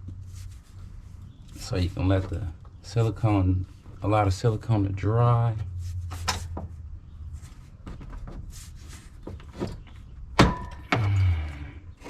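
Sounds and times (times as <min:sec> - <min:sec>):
metal clank: 0:10.4 - 0:11.2.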